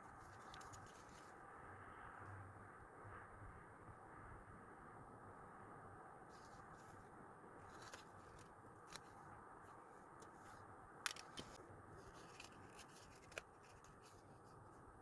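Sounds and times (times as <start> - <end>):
paper and stickers clicking: 0.1 - 1.3, 11.1 - 14.5.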